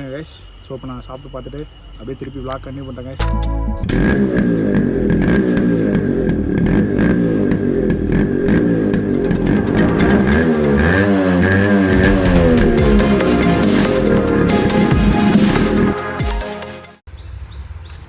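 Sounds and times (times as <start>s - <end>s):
motorcycle engine revving: 3.8s - 15.9s.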